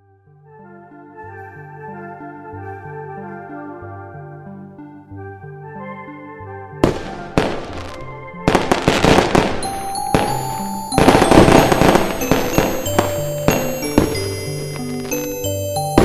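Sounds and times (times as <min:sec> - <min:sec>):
background music with keyboard: 0:00.0 - 0:16.0
fireworks bangs and crackling: 0:06.8 - 0:16.0.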